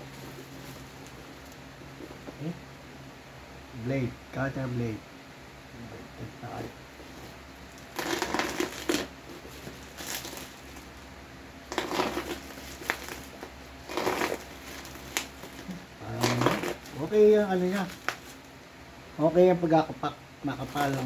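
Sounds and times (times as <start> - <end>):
plastic wrapping crinkling: 7.1 - 18.6, 20.5 - 21.0.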